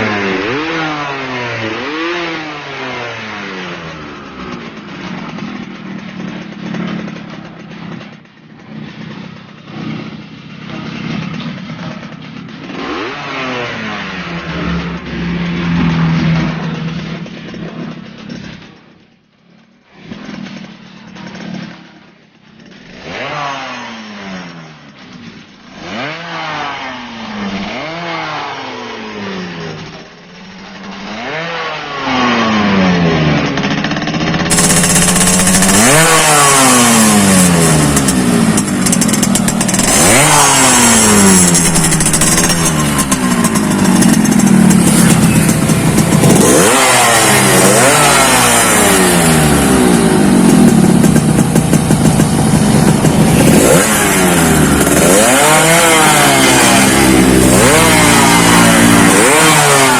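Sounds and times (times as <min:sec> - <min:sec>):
motorcycle engine revving: 0:00.0 - 0:59.9.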